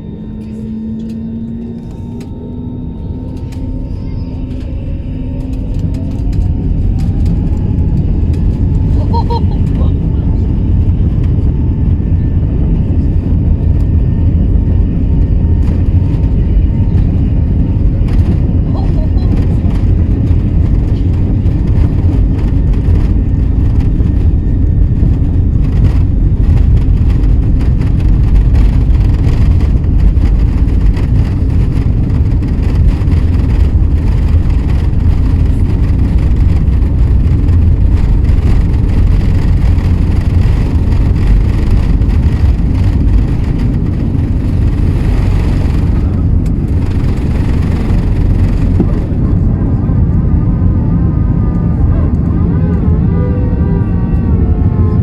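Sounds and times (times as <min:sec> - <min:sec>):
airliner cabin engine rumble: 0:00.0 - 0:55.0.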